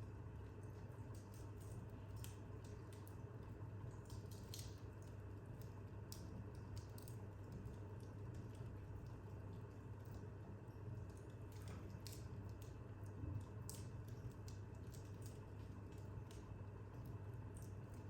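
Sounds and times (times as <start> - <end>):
low steady hum: 0.0 - 18.0
wood fire crackling: 0.0 - 18.0.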